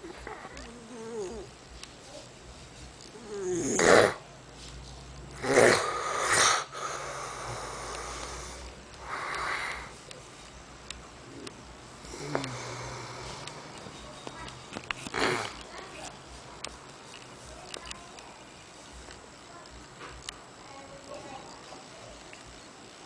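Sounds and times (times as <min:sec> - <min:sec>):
person snoring loudly: 0:03.2 - 0:04.2, 0:05.4 - 0:09.9, 0:12.0 - 0:13.7, 0:15.1 - 0:15.6.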